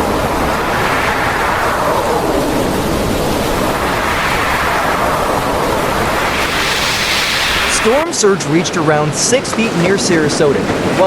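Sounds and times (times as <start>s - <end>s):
hurricane wind: 0.0s - 11.0s
heavy rain: 1.7s - 9.0s.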